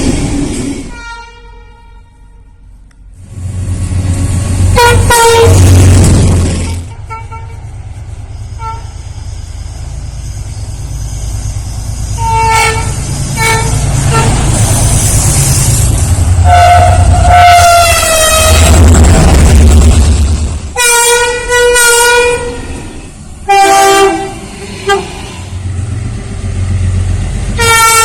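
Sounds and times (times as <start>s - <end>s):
passing train rumble: 0.0s - 28.0s
locomotive air horn: 0.9s - 2.6s, 4.7s - 5.7s, 6.6s - 7.7s, 8.6s - 9.0s, 12.2s - 14.4s, 16.4s - 18.8s, 20.7s - 22.7s, 23.5s - 25.2s, 27.6s - 28.0s.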